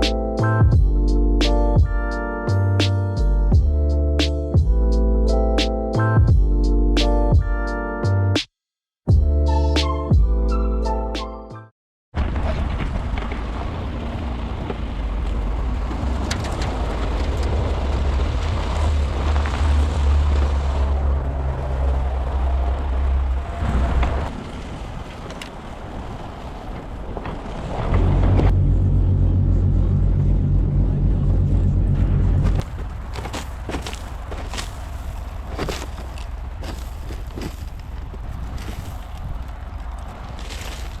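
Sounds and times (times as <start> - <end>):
truck engine rumble: 0.0 - 6.9, 12.2 - 41.0
wind buffeting microphone: 31.1 - 41.0.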